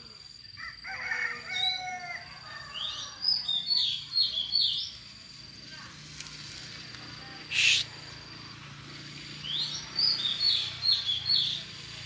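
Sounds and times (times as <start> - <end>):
bird singing: 2.7 - 5.0, 7.5 - 7.9, 9.4 - 11.9
quick rising bird chirps: 7.5 - 7.9.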